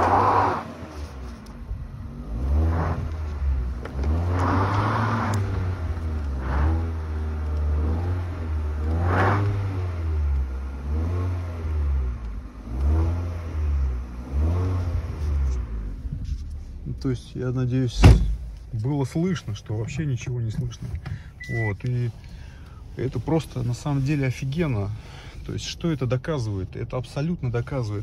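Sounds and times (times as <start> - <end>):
car engine revving: 0.0 - 18.4.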